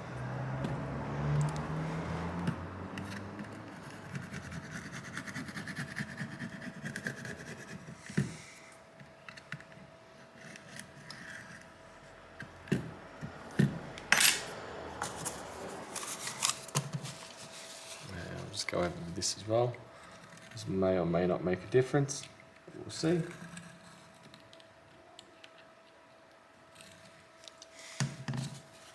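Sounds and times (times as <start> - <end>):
tool scraping glass shards: 14.1 - 16.8.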